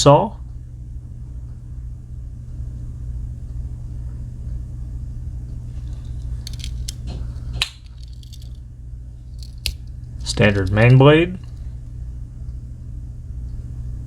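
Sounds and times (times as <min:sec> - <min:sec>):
low hum: 0:00.0 - 0:14.0
metallic clicks of knife tools: 0:06.5 - 0:07.0, 0:07.6 - 0:08.5.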